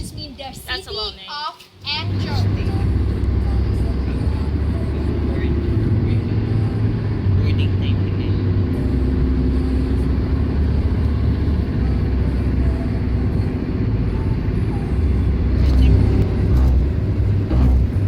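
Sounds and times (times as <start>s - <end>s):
faint voices: 1.8s - 18.0s
faint hum: 1.9s - 18.0s
vehicle rumble from inside: 1.9s - 18.0s.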